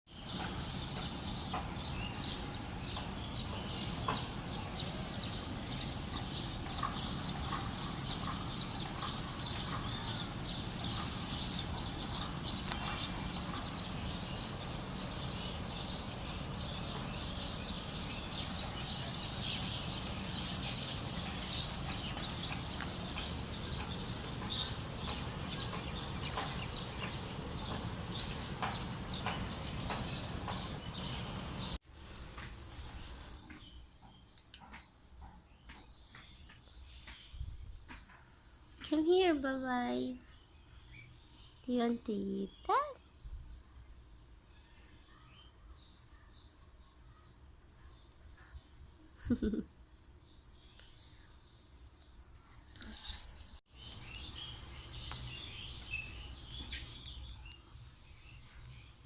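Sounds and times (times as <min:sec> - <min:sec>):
birds chirping: 0:00.1 - 0:52.1, 0:52.8 - 0:59.0
steady background hiss: 0:00.2 - 0:33.4.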